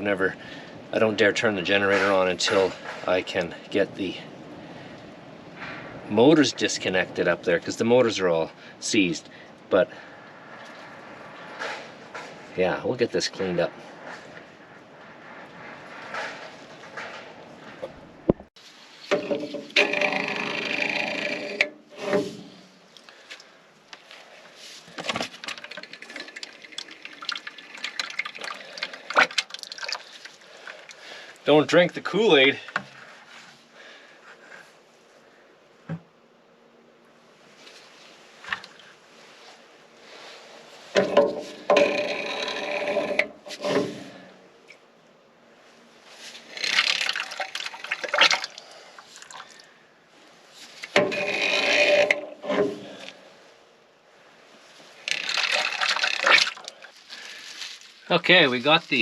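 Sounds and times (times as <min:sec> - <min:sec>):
liquid splashing and dripping: 0:25.4 - 0:31.0, 0:46.7 - 0:49.7, 0:55.1 - 0:56.9
scraping and clicks: 0:50.7 - 0:53.2.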